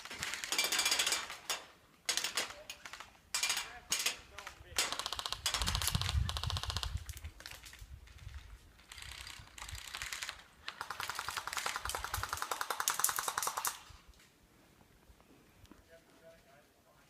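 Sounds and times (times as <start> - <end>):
airsoft guns firing bursts: 0.0 - 7.0, 8.9 - 13.9.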